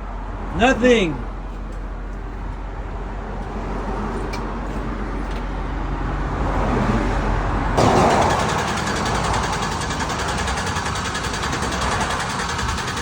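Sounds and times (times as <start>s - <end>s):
freeway traffic rumble: 0.0s - 13.0s
rhythmic mechanical noise: 7.8s - 13.0s.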